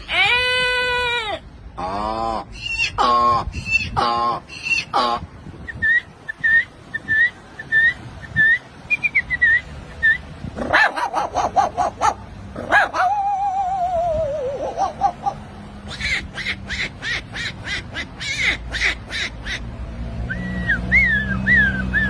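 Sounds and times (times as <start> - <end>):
man imitating animal calls: 0.0 - 5.3, 10.6 - 19.6.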